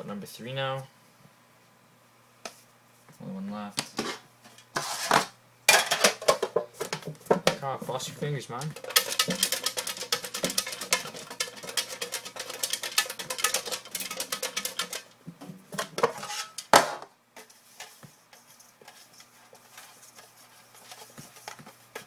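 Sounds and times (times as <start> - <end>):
handling noise: 3.8 - 22.0
papers rattling in a container: 8.5 - 15.2.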